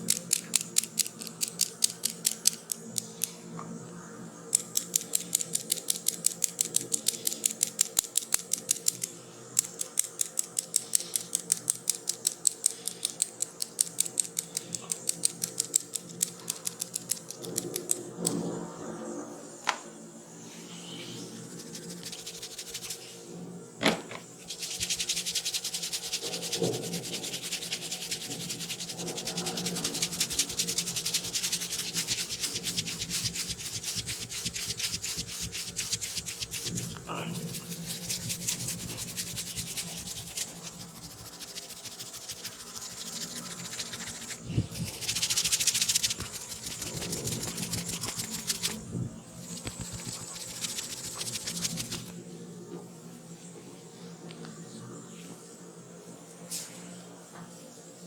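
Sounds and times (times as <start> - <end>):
rapid clicking: 0.0 - 3.3, 4.6 - 18.3, 21.5 - 23.0, 24.5 - 48.8, 49.4 - 52.1
scratchy rubbing: 21.4 - 23.1, 24.4 - 52.1.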